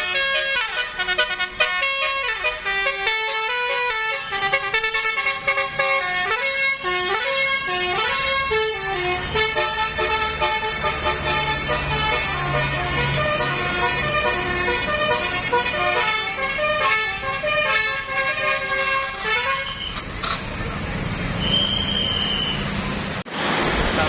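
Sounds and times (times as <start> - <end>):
bus horn playing a tune: 0.0 - 20.0.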